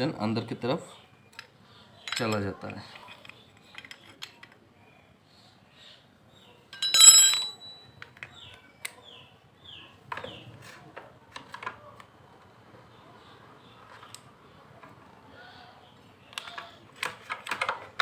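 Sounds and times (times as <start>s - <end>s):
wrench clinking on metal: 2.0s - 2.5s, 6.7s - 8.0s.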